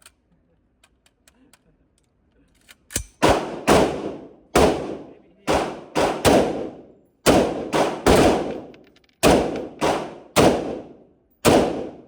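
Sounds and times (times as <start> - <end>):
gunshots with echo: 3.2 - 12.0.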